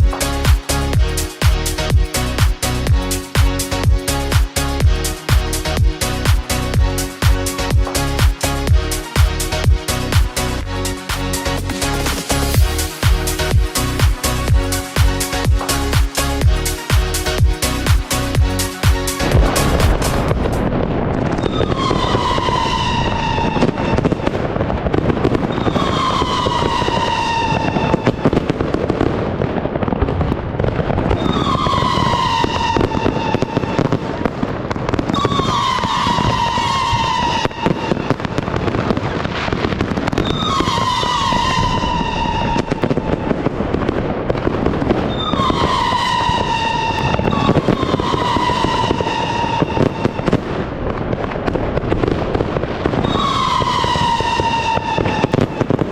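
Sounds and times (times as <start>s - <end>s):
fireworks crackling and popping: 0.0s - 55.9s
falling fireworks whistle: 11.8s - 29.9s, 31.0s - 55.9s.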